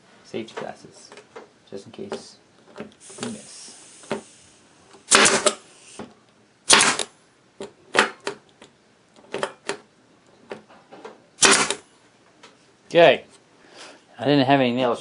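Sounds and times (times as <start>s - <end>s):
hammer striking nails: 5.1s - 5.6s, 6.7s - 7.1s, 11.4s - 11.8s.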